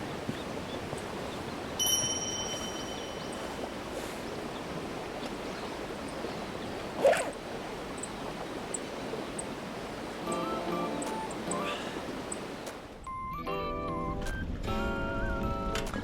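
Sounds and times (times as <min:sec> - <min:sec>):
metallic ding: 0:01.8 - 0:03.3.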